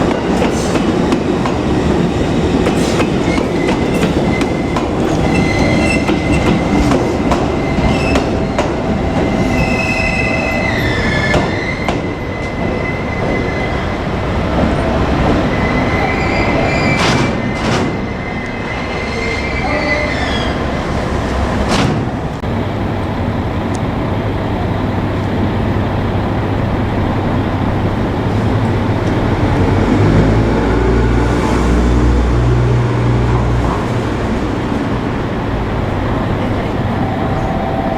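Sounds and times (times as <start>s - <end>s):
electric train rolling past: 0.0s - 37.9s
wheels squealing on rails: 2.7s - 21.0s.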